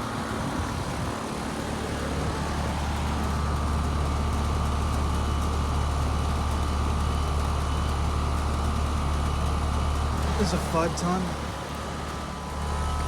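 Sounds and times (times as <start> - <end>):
heat pump compressor humming: 0.0 - 13.0
fan noise: 9.3 - 13.0.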